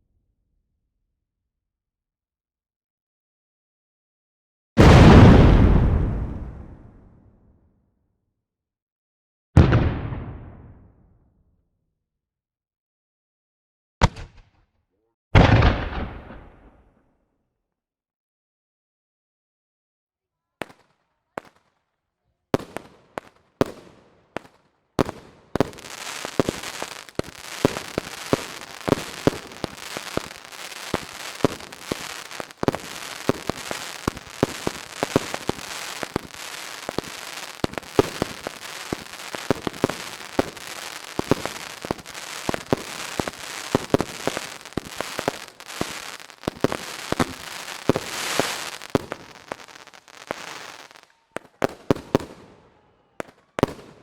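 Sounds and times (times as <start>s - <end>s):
fireworks crackling: 24.4s - 52.4s.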